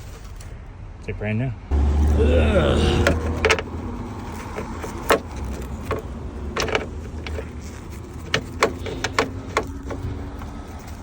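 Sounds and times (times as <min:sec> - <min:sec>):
sharp clicks and knocks: 0:03.0 - 0:11.0.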